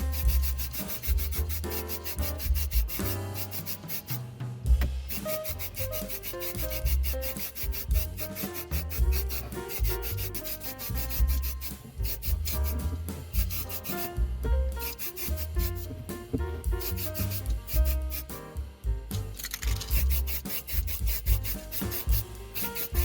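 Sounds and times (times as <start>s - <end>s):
sandpaper rubbing: 0.0s - 4.3s, 5.0s - 14.2s, 14.8s - 18.4s, 19.3s - 23.0s
background music with bass beat: 0.0s - 23.0s.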